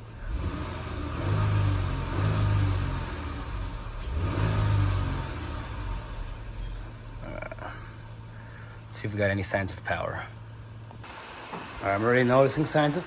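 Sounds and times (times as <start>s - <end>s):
car engine revving: 0.0s - 8.2s.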